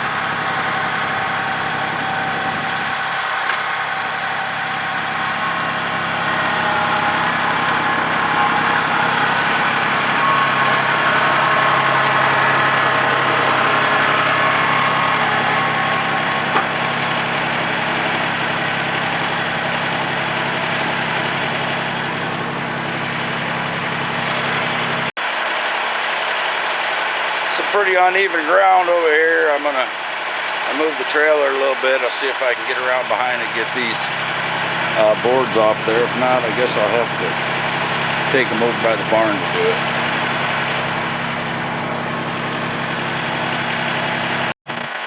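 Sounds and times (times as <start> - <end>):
forklift engine humming: 0.0 - 25.1, 30.0 - 45.0.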